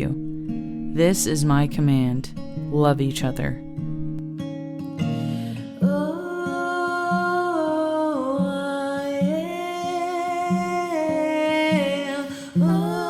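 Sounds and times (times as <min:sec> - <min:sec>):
person singing: 0:05.4 - 0:13.0.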